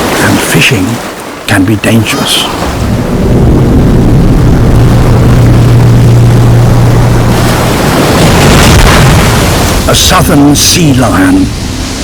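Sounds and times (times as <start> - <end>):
ocean surf rumbling: 0.0 - 12.0
wave breaking with spray hiss: 2.1 - 12.0
steady low hum: 2.5 - 12.0.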